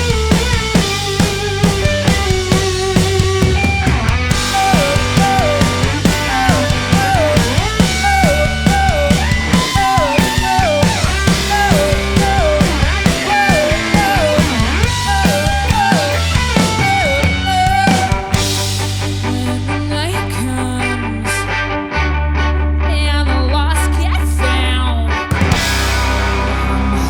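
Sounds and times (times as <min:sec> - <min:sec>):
falling electric guitar figure: 0:00.0 - 0:20.0
rock band instrumental: 0:00.0 - 0:27.0.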